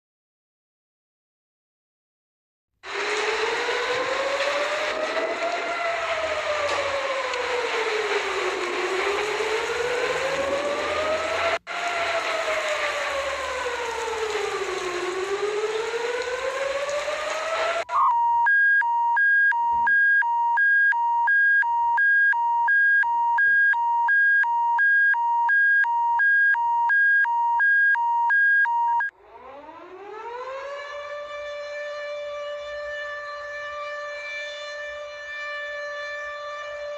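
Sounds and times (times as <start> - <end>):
siren wailing: 2.8 - 36.9
siren winding up: 2.9 - 36.9
two-tone alert beep: 17.9 - 29.1.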